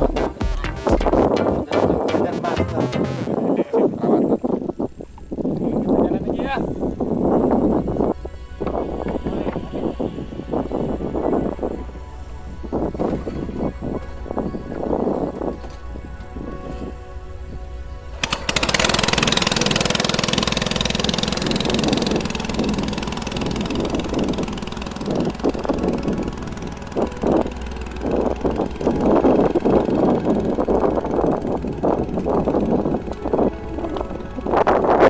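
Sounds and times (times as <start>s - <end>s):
outboard engine running: 0.0s - 1.7s, 18.0s - 35.0s.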